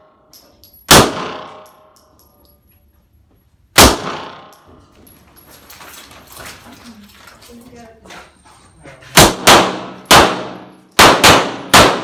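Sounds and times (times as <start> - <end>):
pistol shots ringing out: 0.9 - 1.9, 3.8 - 4.6, 9.2 - 12.0.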